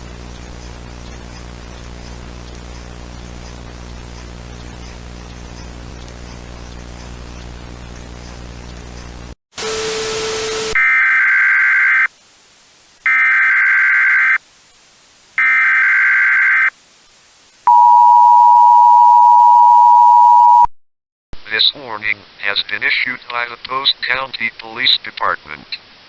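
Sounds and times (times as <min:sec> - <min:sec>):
screeching data bursts: 0:10.8 - 0:12.1, 0:13.0 - 0:14.4, 0:15.4 - 0:16.7
two-tone attention signal: 0:10.8 - 0:12.1, 0:13.1 - 0:14.4, 0:15.4 - 0:16.7, 0:17.7 - 0:20.7.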